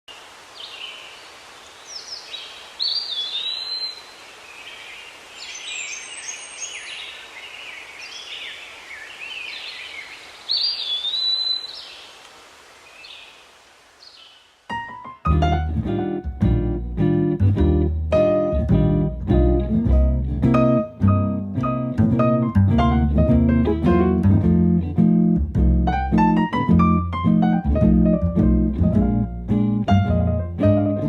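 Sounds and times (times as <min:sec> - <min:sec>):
faint steady hiss: 0:00.1 - 0:15.4
songbirds singing: 0:00.5 - 0:14.6.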